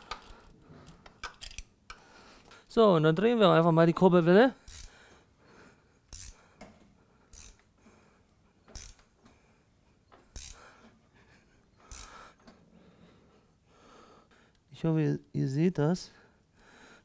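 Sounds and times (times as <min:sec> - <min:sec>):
wrench on crank bolt clicks: 0:01.2 - 0:02.0, 0:04.7 - 0:04.9, 0:06.1 - 0:06.4, 0:07.3 - 0:07.6, 0:08.8 - 0:09.0, 0:10.4 - 0:10.6, 0:11.9 - 0:12.1.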